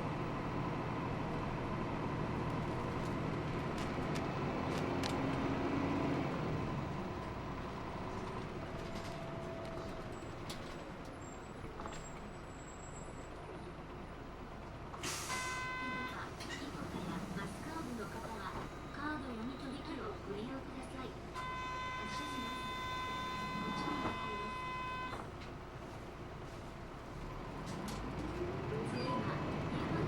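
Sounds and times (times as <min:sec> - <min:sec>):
bus diesel engine: 0:00.0 - 0:30.0
road noise: 0:00.0 - 0:30.0
beeping tone: 0:21.4 - 0:25.2.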